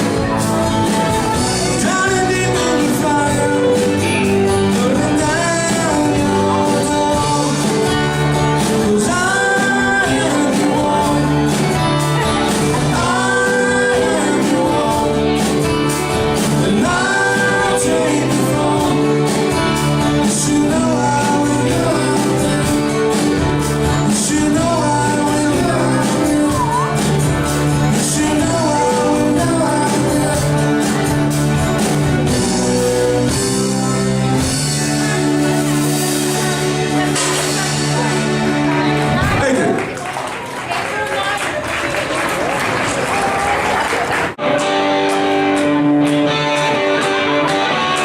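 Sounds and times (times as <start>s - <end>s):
lead vocal singing: 0.0s - 33.7s
live band playing: 0.0s - 48.0s.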